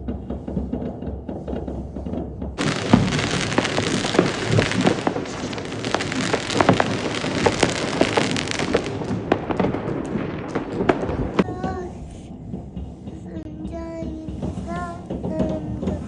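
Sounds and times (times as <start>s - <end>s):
fireworks and firecrackers crackling: 0.0s - 16.0s
low rumble: 2.5s - 14.3s.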